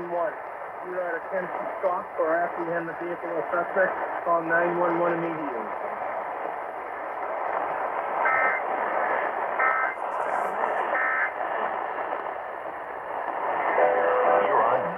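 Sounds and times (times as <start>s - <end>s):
radio broadcast hiss: 0.0s - 14.9s
warbling digital data bursts: 9.6s - 11.3s.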